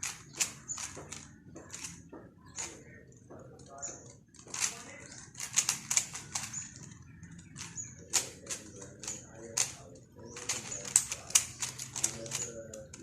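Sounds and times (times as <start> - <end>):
rubik's cube clicking: 0.0 - 2.0, 4.4 - 9.8, 10.4 - 13.0.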